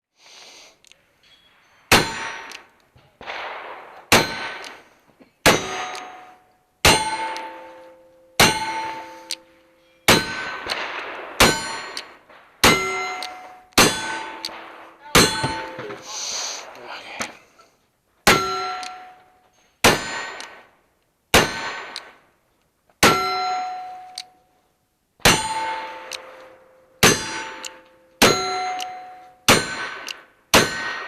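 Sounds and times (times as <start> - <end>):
bullet ringing steel target: 1.2 - 4.8, 5.4 - 16.1, 18.3 - 20.7, 21.4 - 22.2, 23.0 - 24.5, 25.2 - 31.0.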